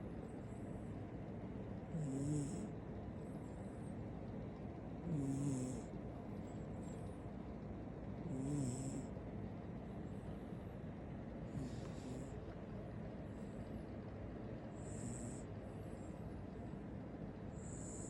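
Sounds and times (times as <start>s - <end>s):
puppy snoring: 1.8s - 2.8s, 5.0s - 6.0s, 8.2s - 9.2s, 11.4s - 12.6s, 14.6s - 16.2s, 17.4s - 18.0s
soft breaths: 8.8s - 18.0s.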